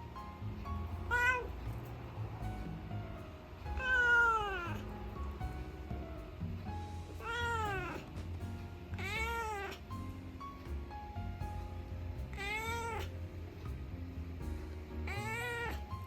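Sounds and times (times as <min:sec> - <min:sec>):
cat meowing: 0:01.1 - 0:01.5, 0:03.7 - 0:04.8, 0:07.2 - 0:08.1, 0:09.0 - 0:09.8, 0:12.3 - 0:13.2, 0:15.1 - 0:15.8.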